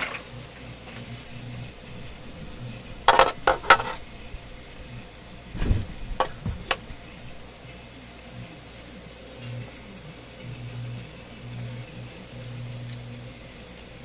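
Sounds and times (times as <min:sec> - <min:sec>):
dull thump: 0:05.5 - 0:06.9.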